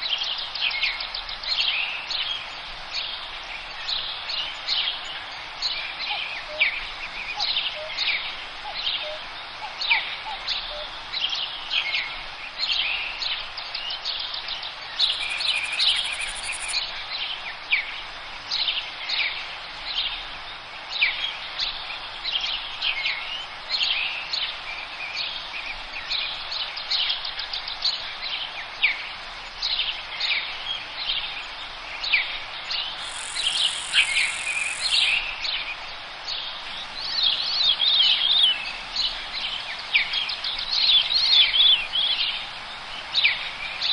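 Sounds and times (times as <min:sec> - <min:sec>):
songbirds chirping and whistling: 0:12.7 - 0:16.9, 0:32.0 - 0:43.9
high thin buzzing note: 0:33.0 - 0:35.2.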